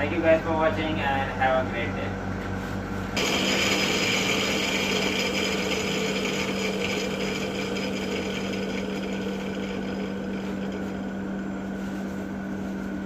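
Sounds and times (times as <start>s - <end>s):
motor running steadily: 0.0s - 13.0s.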